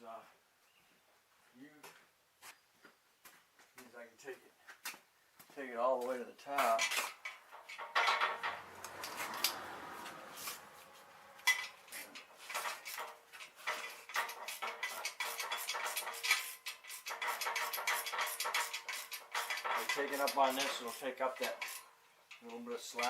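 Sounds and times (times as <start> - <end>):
metal clinks and clanks: 6.6 - 9.8, 10.5 - 23.0.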